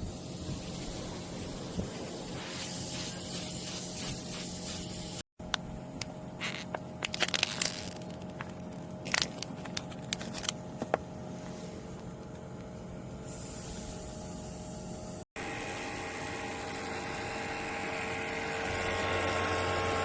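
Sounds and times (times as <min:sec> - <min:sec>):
gas hissing from pipe: 0:13.2 - 0:15.6.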